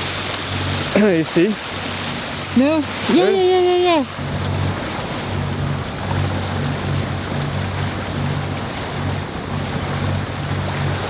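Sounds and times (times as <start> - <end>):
boat engine humming: 0.0 - 11.0
wind and water hiss: 0.0 - 11.0.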